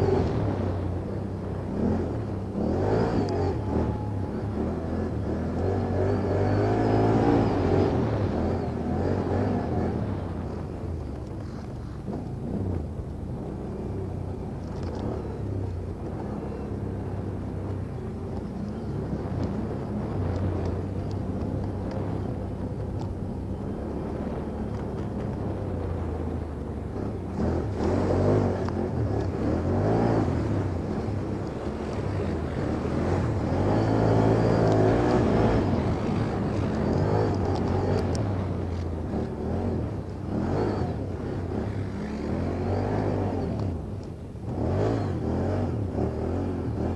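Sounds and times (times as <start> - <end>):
atv engine revving: 0.0 - 46.9.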